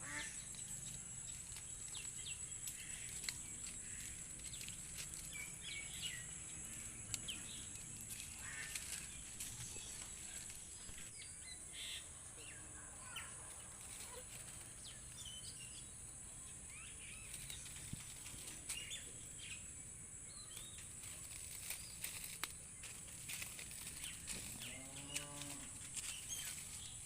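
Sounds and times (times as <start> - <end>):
farm animal call: 0.0 - 0.4
bird chirps: 0.0 - 22.4.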